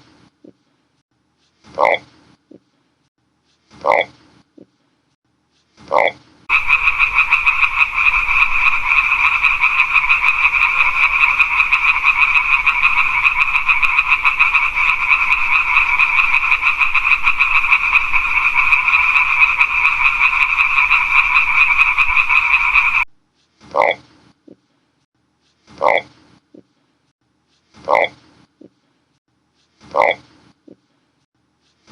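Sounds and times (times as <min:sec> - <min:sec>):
frogs croaking: 0:06.5 - 0:23.1.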